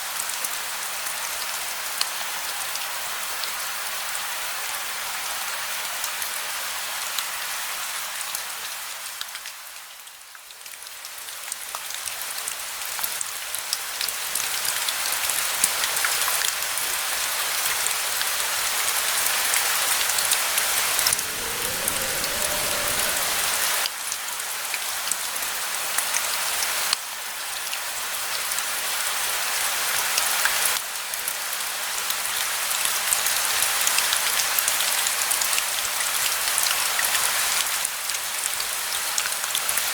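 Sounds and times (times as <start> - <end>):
steady rain hissing: 19.1 - 24.4
low rumble: 20.6 - 24.0.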